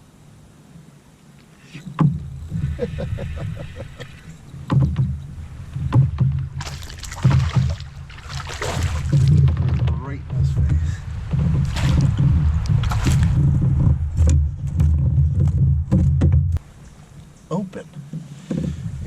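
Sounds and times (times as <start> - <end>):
water splash: 4.0 - 14.4
knocks against kayak hull: 4.6 - 16.6.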